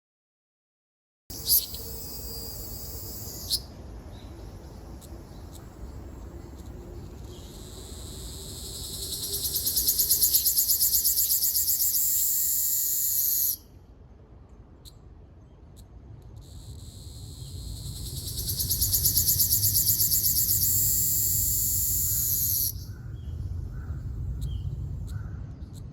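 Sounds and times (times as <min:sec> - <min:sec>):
cicada buzzing: 0:01.3 - 0:03.7, 0:04.4 - 0:13.6, 0:16.4 - 0:22.9.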